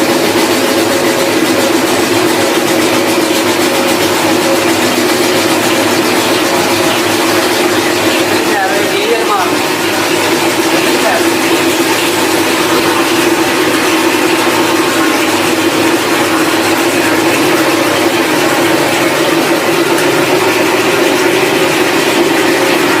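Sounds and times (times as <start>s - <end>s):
factory machinery din: 0.0s - 23.0s.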